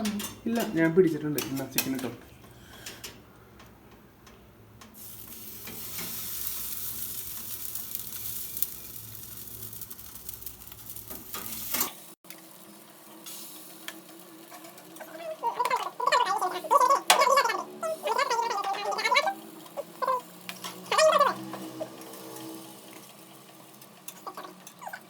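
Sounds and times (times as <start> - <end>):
chicken sizzling on a hot tray: 5.0 - 17.2, 17.8 - 25.0.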